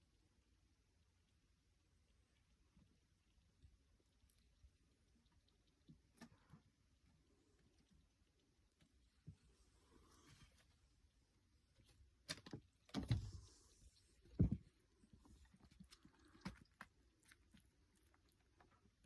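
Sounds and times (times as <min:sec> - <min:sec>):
light ticks and pattering: 0:02.0 - 0:12.8
kittens thumping and scuffling: 0:12.3 - 0:17.0.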